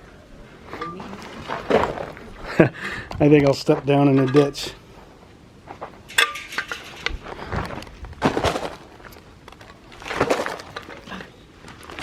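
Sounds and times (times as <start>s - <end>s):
footsteps on rough ground: 5.7s - 12.0s.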